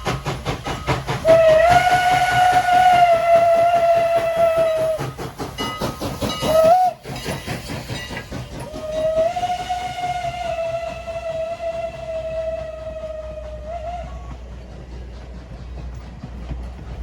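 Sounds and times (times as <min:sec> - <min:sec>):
rhythmic beat of moving train: 0:00.0 - 0:17.0
steam whistle blowing: 0:01.2 - 0:05.1, 0:06.5 - 0:07.1, 0:08.8 - 0:14.4.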